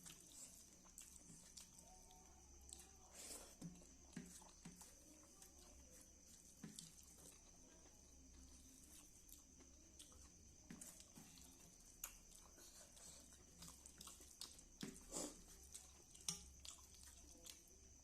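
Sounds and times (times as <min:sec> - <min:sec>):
person chewing: 0:00.0 - 0:18.0.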